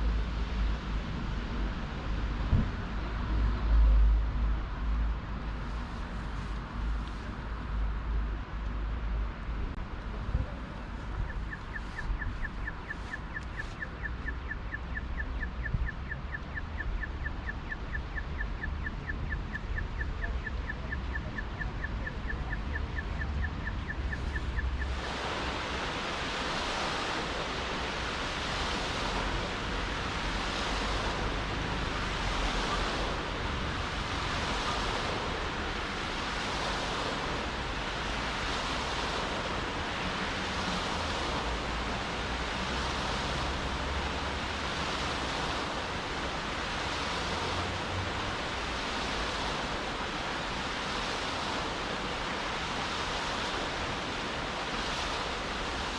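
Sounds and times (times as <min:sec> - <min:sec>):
rain falling on street: 0:18.0 - 0:55.9.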